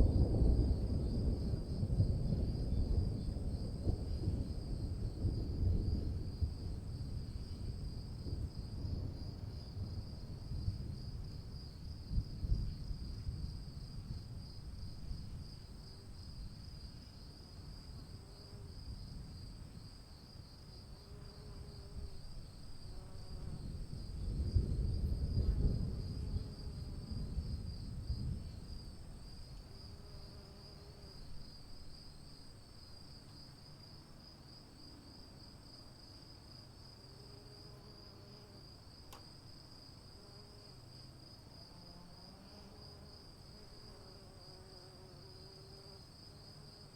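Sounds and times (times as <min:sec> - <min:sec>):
distant thunder rumbling: 0:00.0 - 0:15.4, 0:23.5 - 0:29.4.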